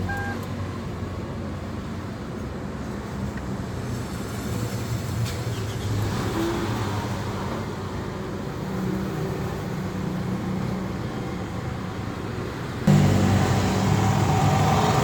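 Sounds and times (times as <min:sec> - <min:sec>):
car engine droning: 0:12.8 - 0:15.0.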